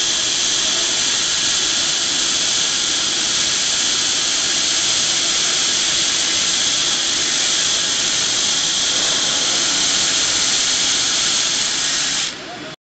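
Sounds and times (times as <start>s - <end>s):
belt grinder grinding steel: 0.0s - 12.4s.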